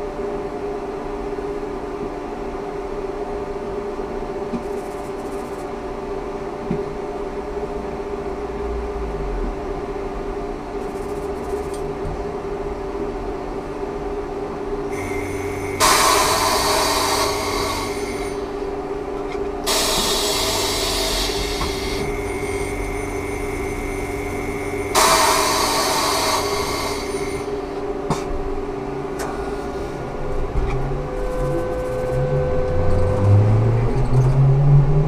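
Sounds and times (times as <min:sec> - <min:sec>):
electric hum with held tones: 0:00.0 - 0:35.0
low rumble: 0:29.7 - 0:35.0.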